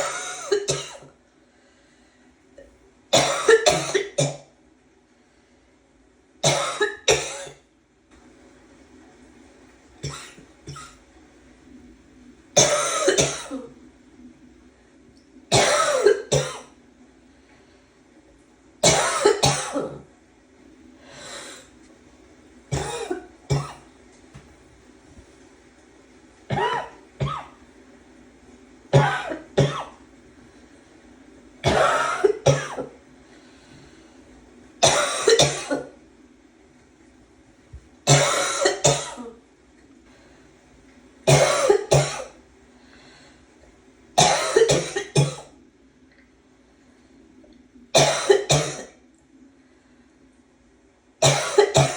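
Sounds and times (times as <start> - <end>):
person barking cough: 26.5 - 27.5.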